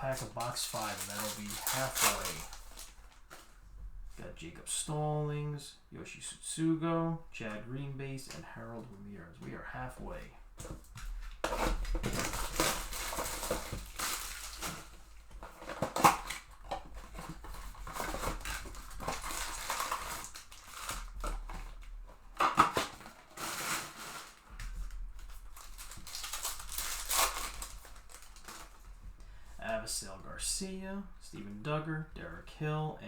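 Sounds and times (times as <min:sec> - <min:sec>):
plastic wrapper crinkling and tearing: 0:00.0 - 0:03.6, 0:10.6 - 0:29.0.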